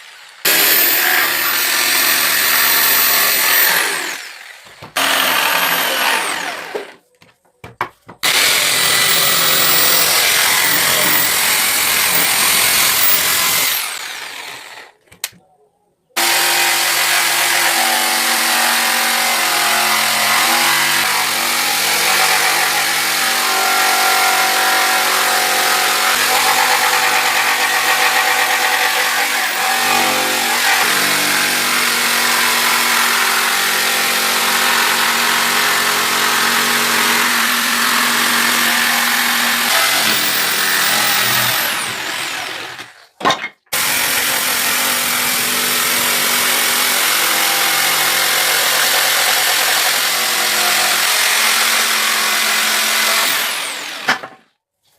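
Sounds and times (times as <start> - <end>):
power tool motor working wood: 0.4 - 7.0, 8.2 - 14.9, 16.2 - 42.9.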